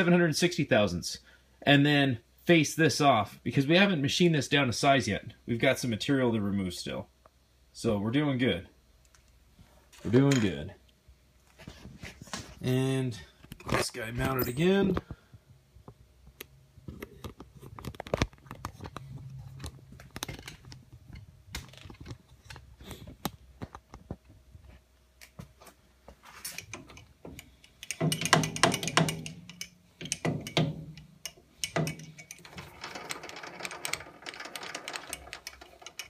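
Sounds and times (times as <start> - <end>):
metal knocks on lathe chuck: 27.9 - 31.0.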